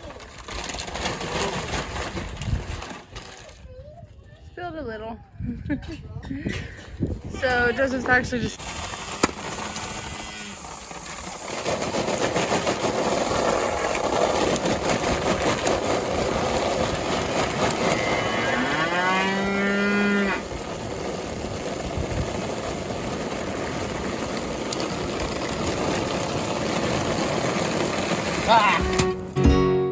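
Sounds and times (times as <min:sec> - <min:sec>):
farm machinery running: 0:00.0 - 0:03.5, 0:07.4 - 0:29.9
cow mooing: 0:17.9 - 0:20.4.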